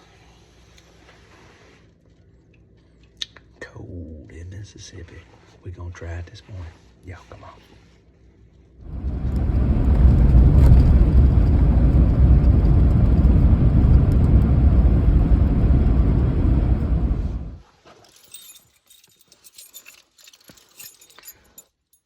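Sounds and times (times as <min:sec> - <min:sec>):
loud vehicle rumble: 0:08.8 - 0:17.6.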